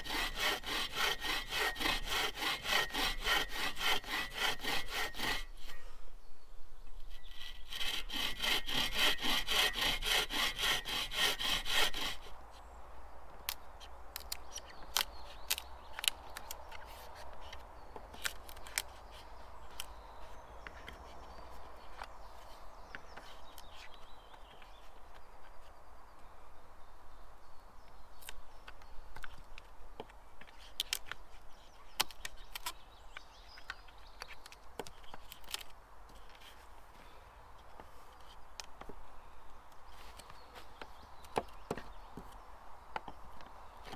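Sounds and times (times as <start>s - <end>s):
hand saw cutting wood: 0.0s - 5.8s, 7.1s - 12.3s.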